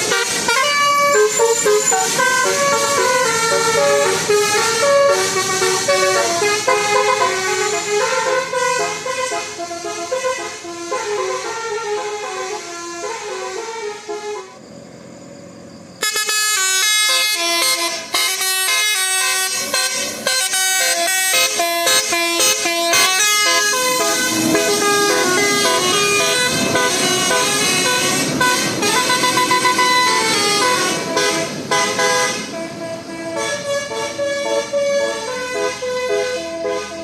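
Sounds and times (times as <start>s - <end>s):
multi-tone bus horn tune: 0.0s - 14.6s, 16.0s - 37.0s.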